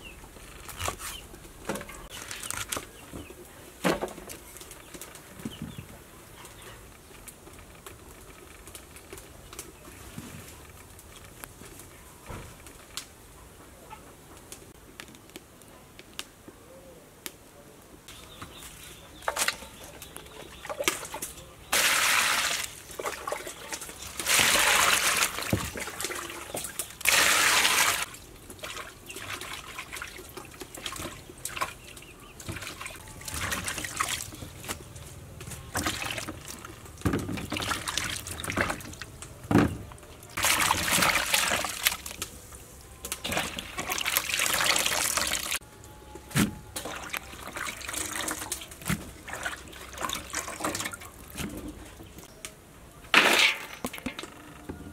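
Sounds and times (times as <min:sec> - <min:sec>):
water splashing and running: 0:19.2 - 0:34.8, 0:35.6 - 0:39.1, 0:40.4 - 0:42.2, 0:43.2 - 0:45.6, 0:46.8 - 0:52.2.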